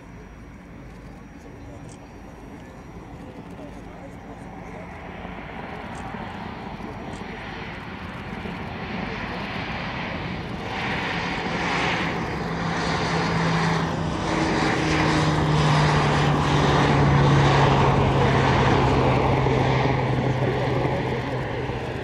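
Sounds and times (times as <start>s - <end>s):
turboprop engines droning: 0.0s - 22.0s.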